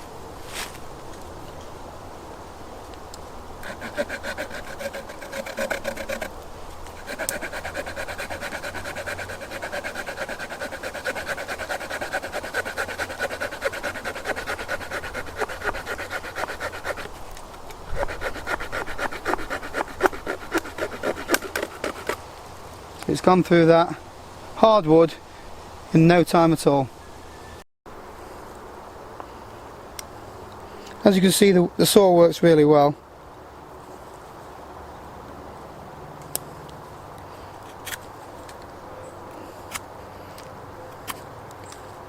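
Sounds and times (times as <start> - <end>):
small saw cutting through branch: 3.6 - 22.2.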